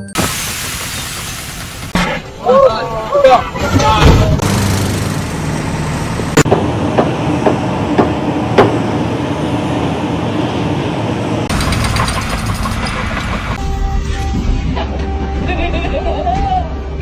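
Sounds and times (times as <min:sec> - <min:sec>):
steady mechanical rumble: 0:00.1 - 0:17.0.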